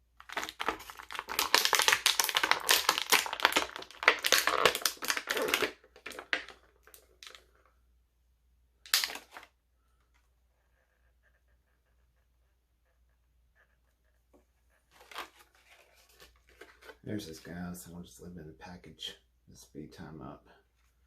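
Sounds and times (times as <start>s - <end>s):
packaging crackling: 0.2s - 7.4s, 8.8s - 9.5s
packaging crinkling and clicking: 0.2s - 7.4s, 8.9s - 9.5s.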